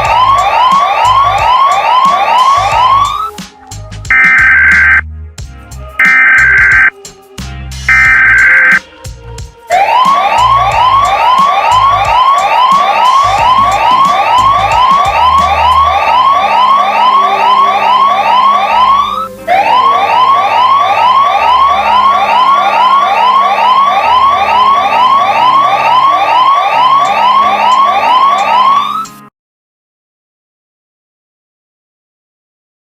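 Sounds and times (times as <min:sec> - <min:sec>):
rising whoop alarm tone: 0:00.0 - 0:03.3, 0:04.1 - 0:05.0, 0:06.0 - 0:06.9, 0:07.9 - 0:08.8, 0:09.7 - 0:29.2.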